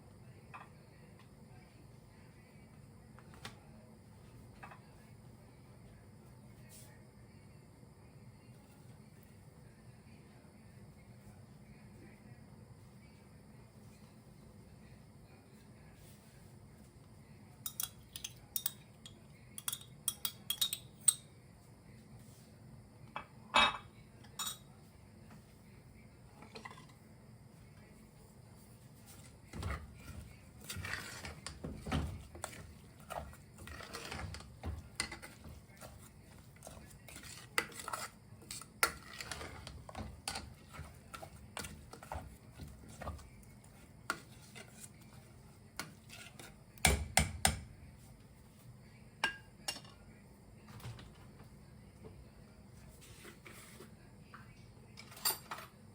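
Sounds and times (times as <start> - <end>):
spoon clinking against pot: 17.6 - 21.3, 23.6 - 24.7.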